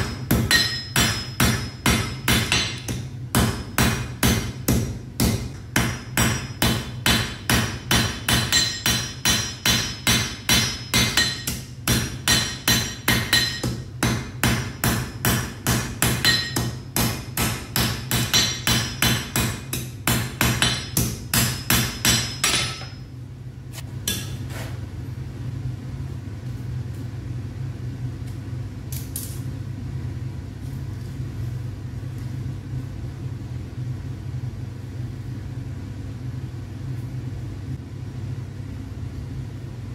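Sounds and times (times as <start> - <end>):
hammer striking iron on anvil: 0.0 - 23.1, 24.0 - 24.4.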